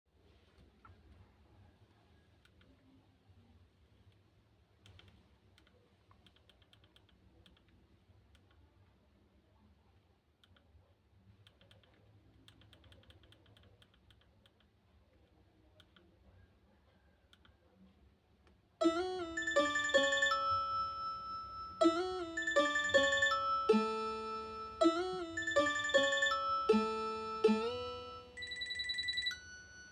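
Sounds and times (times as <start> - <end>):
phone ringtone melody: 18.8 - 29.9.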